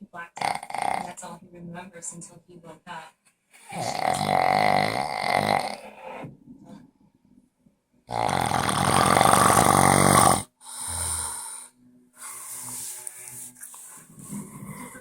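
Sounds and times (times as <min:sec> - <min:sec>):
person snoring: 0:00.4 - 0:01.1, 0:03.7 - 0:06.3, 0:08.1 - 0:15.0.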